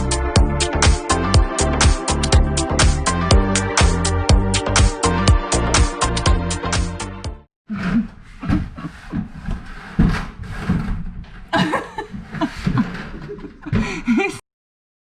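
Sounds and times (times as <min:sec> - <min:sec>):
background music: 0:00.0 - 0:07.5.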